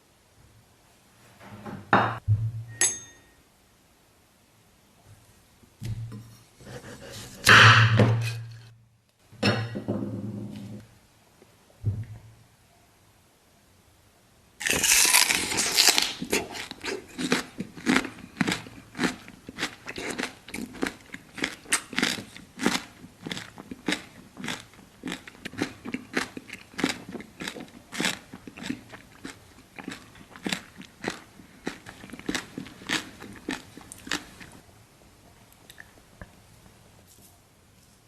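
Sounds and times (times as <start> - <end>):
crunchy bite into food: 14.6 - 34.5
crunchy chewing: 14.6 - 34.6.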